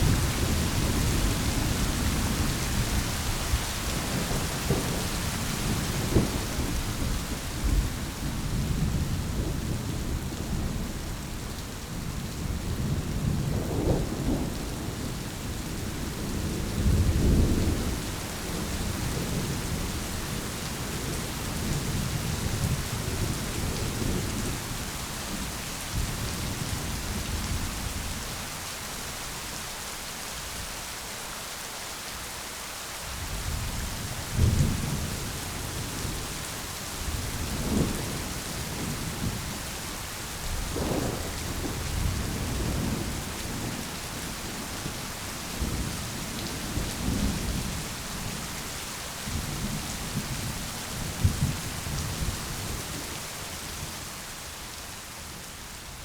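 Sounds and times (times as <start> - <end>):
steady rain: 0.0 - 56.0
distant rolling thunder: 33.2 - 48.4.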